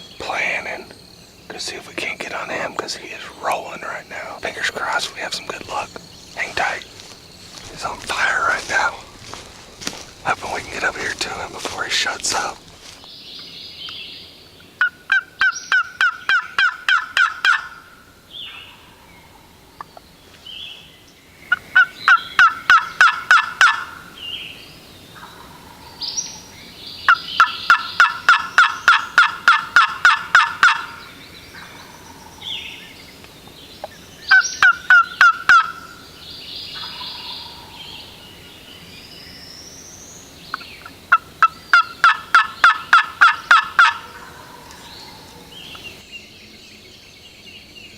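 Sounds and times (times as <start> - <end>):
turkey yelping: 14.8 - 17.8, 21.8 - 24.0, 27.1 - 31.0, 34.3 - 36.0, 40.8 - 45.3.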